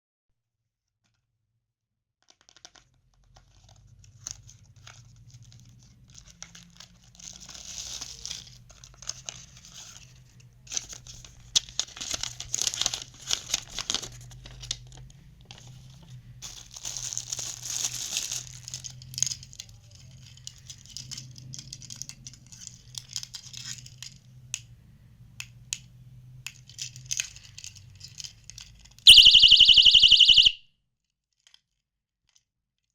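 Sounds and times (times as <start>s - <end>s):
plastic packaging crinkling: 16.4s - 19.0s
piercing alarm shriek: 29.1s - 30.6s.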